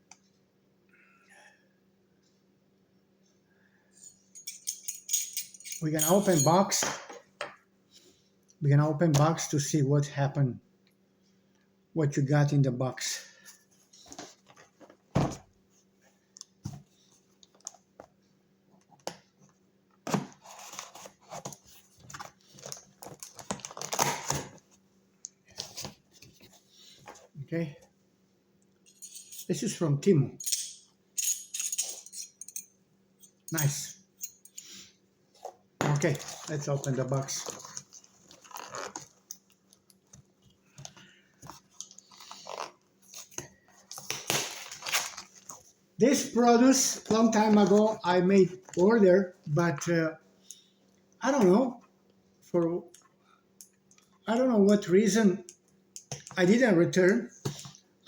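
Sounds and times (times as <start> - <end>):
package wrapping crinkling and tearing: 22.4 - 24.6, 36.2 - 39.9, 43.9 - 45.6.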